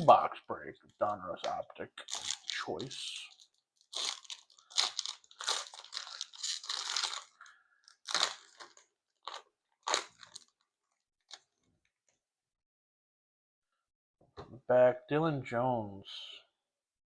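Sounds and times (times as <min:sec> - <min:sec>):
packaging crinkling and tearing: 0:01.4 - 0:10.7.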